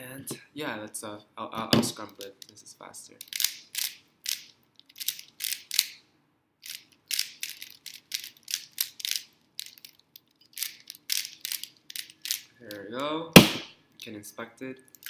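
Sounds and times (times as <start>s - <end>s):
puzzle cube clicking: 3.2s - 6.0s, 6.6s - 12.8s.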